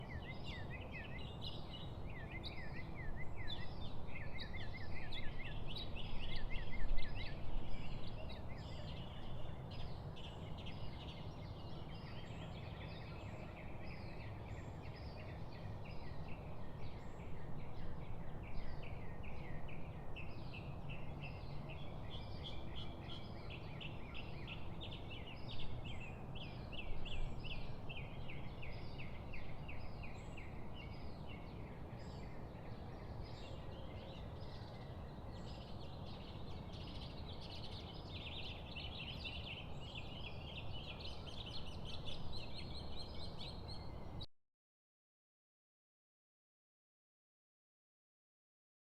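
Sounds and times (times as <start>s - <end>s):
birds singing and chirping: 0.0s - 44.2s
low rumble of outdoor noise: 0.0s - 44.3s.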